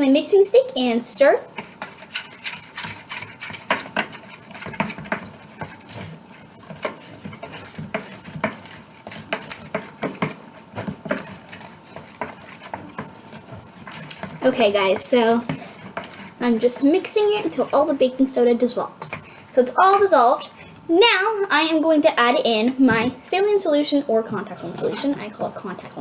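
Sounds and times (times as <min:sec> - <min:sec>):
stick stirring glue in a bowl: 0:00.8 - 0:20.8, 0:21.4 - 0:26.0
stick knocking against bowl: 0:01.6 - 0:16.2.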